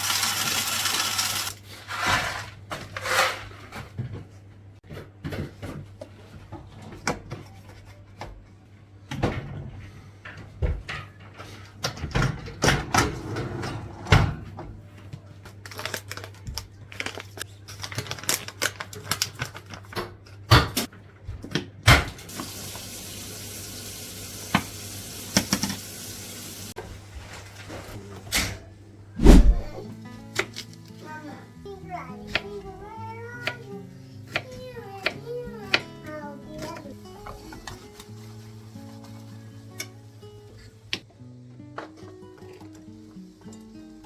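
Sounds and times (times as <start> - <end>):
tap running: 22.3 - 26.7.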